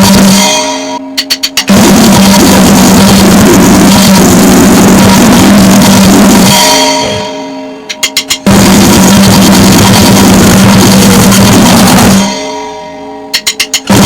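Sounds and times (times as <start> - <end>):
noisegrind band playing: 0.0 - 14.0
ringing tones: 0.0 - 14.0
quick sharp clicks: 1.2 - 1.7, 7.9 - 8.5.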